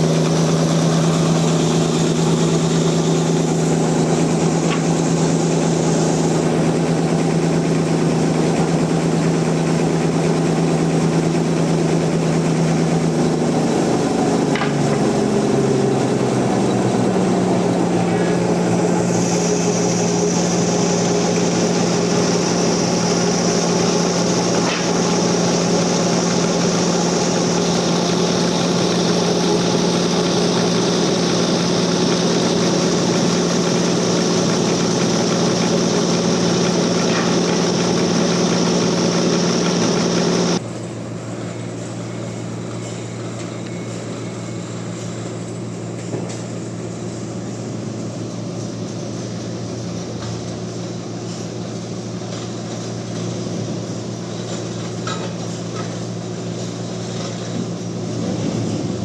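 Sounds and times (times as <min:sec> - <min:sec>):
low machine hum: 0:00.0 - 0:45.6, 0:55.8 - 0:59.0
bandsaw cutting log: 0:13.2 - 0:40.6.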